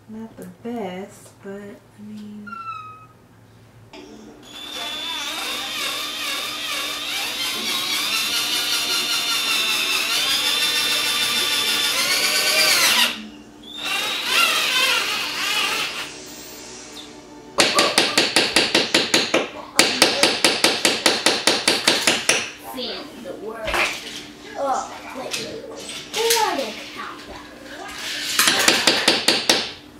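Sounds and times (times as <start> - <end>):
power drill motor whine: 4.4 - 16.1.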